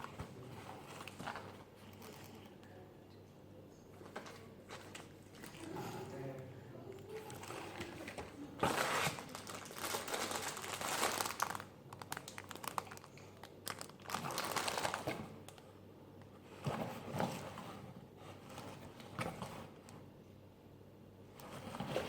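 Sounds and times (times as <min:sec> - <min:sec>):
packaging crinkling: 0:07.1 - 0:15.7.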